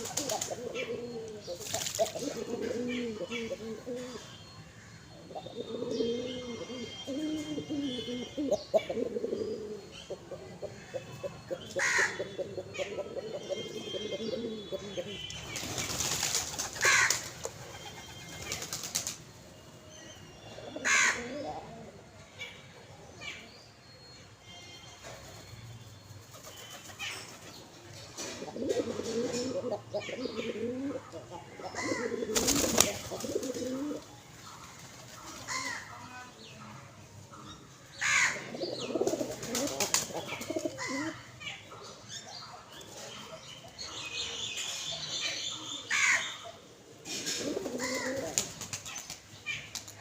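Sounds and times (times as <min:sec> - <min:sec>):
birds bathing and flapping wings: 0:00.0 - 0:00.6, 0:01.6 - 0:02.2, 0:15.6 - 0:19.2, 0:32.3 - 0:33.7, 0:39.2 - 0:40.1
birds calling: 0:00.0 - 0:50.0
wings flapping: 0:15.6 - 0:17.6, 0:32.4 - 0:33.6.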